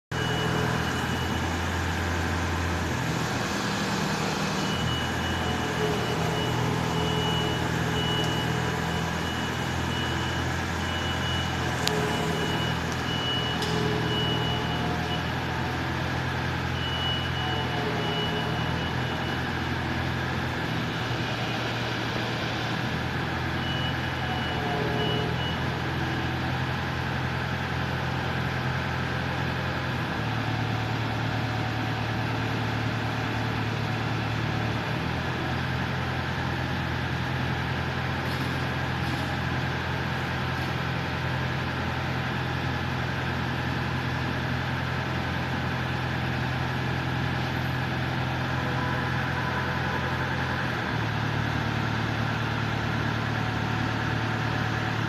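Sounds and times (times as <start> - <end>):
short electronic beeps: 0.1 - 2.3, 4.6 - 15.8, 16.6 - 19.9
low engine-like hum: 0.1 - 55.0.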